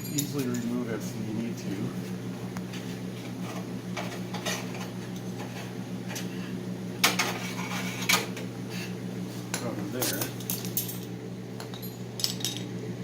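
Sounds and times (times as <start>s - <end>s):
metal parts and tools clinking: 0.0s - 0.8s, 9.6s - 12.7s
steady low hum: 0.0s - 13.0s.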